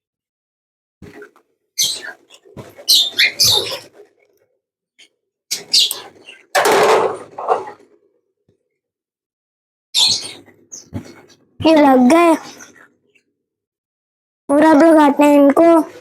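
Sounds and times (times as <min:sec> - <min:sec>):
parrots squawking: 0:02.9 - 0:03.8.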